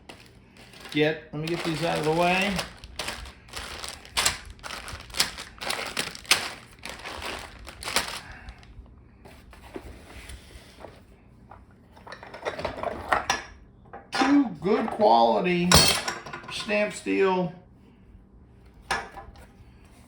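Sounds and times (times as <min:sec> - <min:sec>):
packaging rustling: 0:00.0 - 0:08.8.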